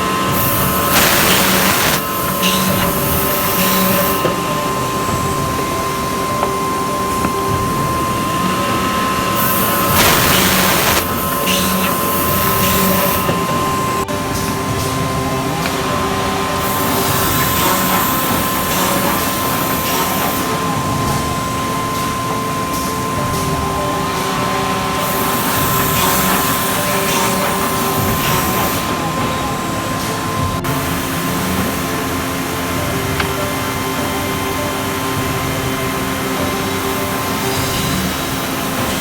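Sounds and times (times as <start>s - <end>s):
loud hissing: 0.0s - 5.1s, 8.4s - 23.0s
drilling machine whining: 0.0s - 39.0s.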